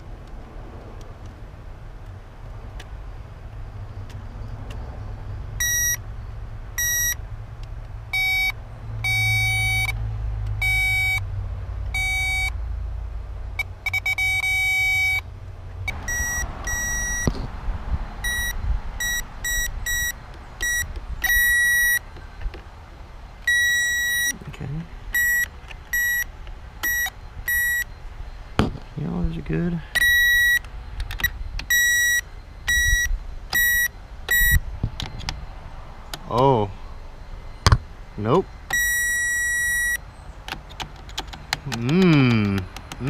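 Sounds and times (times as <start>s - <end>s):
multimeter beeping: 5.6s - 6.0s, 6.8s - 7.2s, 8.1s - 10.0s, 10.6s - 11.2s, 12.0s - 12.5s, 13.6s - 15.2s, 16.1s - 17.4s, 18.2s - 22.0s, 23.4s - 24.4s, 25.1s - 28.0s, 30.0s - 35.4s, 38.7s - 40.0s.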